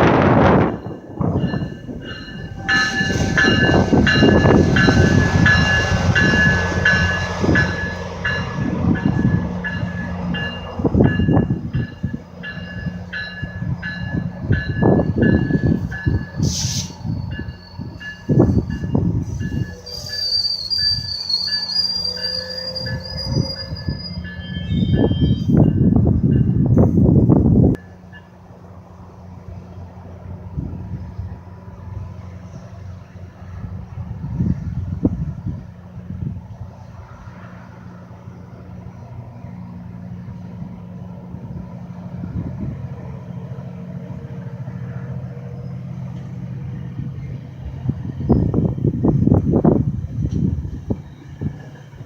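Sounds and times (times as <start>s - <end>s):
diesel locomotive engine droning: 0.0s - 52.0s
high ringing tones: 0.6s - 16.4s.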